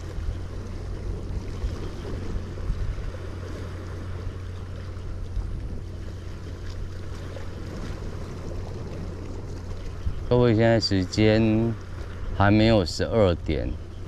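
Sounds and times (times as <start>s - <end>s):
waves washing: 0.0s - 14.0s
wind rumble on microphone: 0.0s - 14.0s.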